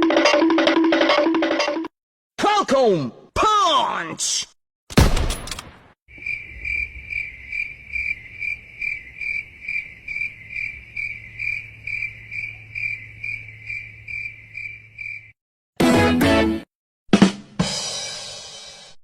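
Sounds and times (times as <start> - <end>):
crickets chirping: 6.1 - 15.4.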